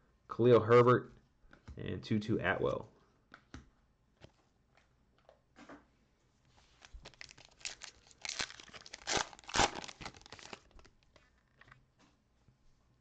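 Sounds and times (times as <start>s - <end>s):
plastic wrapper tearing and crinkling: 6.8s - 11.0s.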